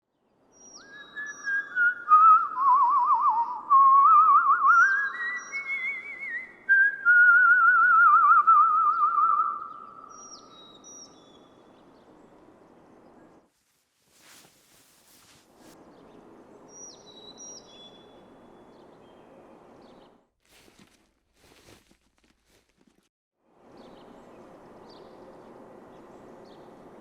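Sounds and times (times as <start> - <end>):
birds chirping: 4.7 - 7.0, 8.7 - 13.5, 15.5 - 20.3, 23.7 - 27.0.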